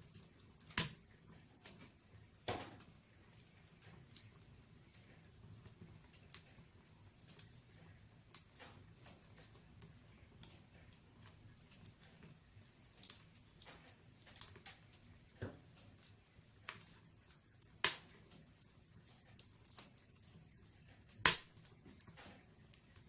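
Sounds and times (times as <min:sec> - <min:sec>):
wood fire crackling: 0:00.0 - 0:23.0
sharp pops: 0:21.2 - 0:21.5.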